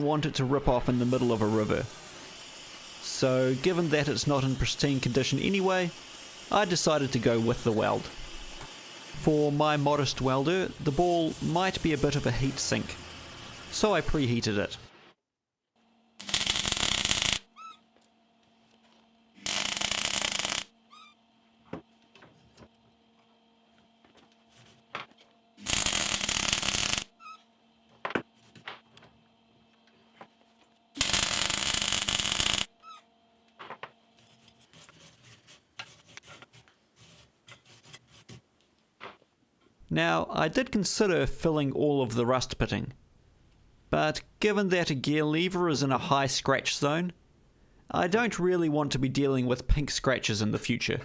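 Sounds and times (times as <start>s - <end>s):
arc welding bursts: 0.7s - 14.9s, 16.2s - 17.6s, 19.4s - 21.1s, 25.6s - 27.2s, 31.0s - 32.8s
faint steady hum: 15.8s - 51.0s.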